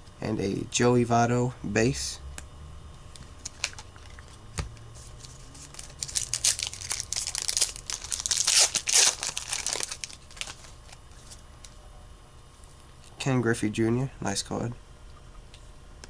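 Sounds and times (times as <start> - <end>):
card pack wrapper tearing and crinkling: 3.1 - 4.3, 5.2 - 11.0.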